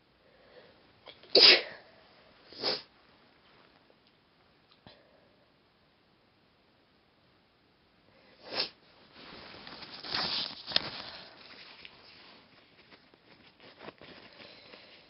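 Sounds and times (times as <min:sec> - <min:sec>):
woman sniffing and breathing: 0:08.3 - 0:08.8, 0:14.0 - 0:15.0.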